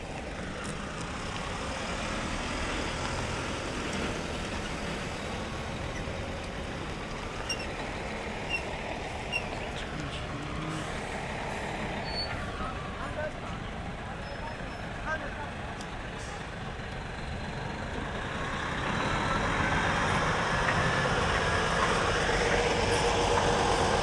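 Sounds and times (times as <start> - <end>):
truck engine rumble: 0.0 - 24.0.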